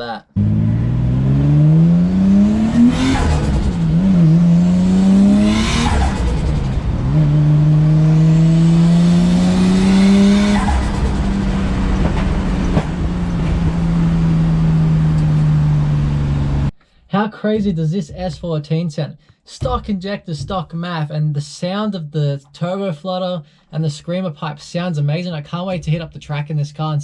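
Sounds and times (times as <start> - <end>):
car engine accelerating: 0.3 - 16.7.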